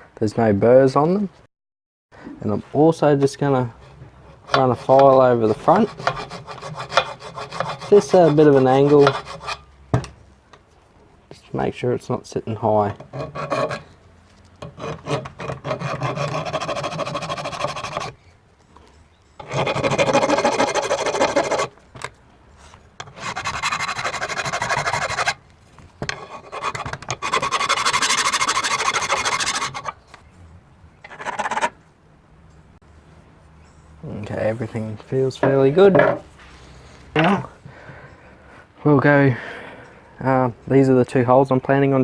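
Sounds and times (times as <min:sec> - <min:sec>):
hand file rasping on metal: 0:03.9 - 0:09.6, 0:13.1 - 0:13.9, 0:14.6 - 0:18.2, 0:19.4 - 0:21.7, 0:23.0 - 0:25.4, 0:26.1 - 0:30.0.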